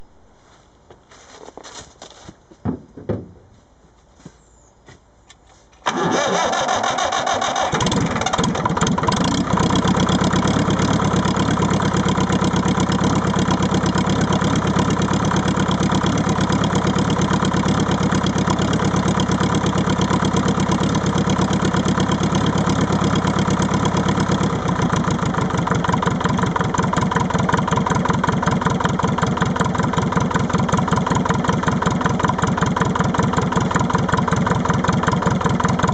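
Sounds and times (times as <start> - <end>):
diesel engine running: 5.8 - 35.9.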